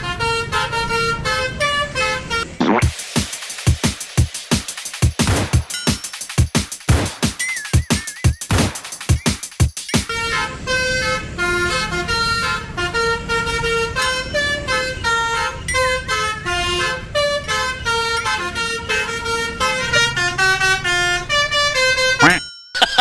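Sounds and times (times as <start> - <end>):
multi-note bus horn tune: 0.0 - 2.6, 10.1 - 22.4.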